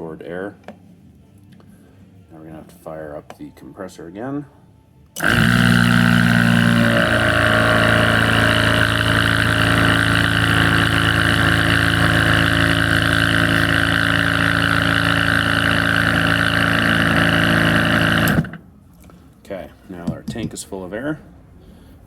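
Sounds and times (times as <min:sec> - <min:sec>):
air compressor running: 0:05.2 - 0:18.7.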